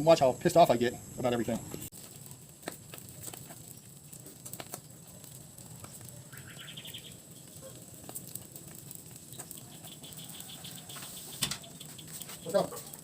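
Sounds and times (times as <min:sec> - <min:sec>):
fish crackling on charcoal grill: 0:00.0 - 0:13.0
rapid chirping trill: 0:06.3 - 0:07.6, 0:09.5 - 0:13.0.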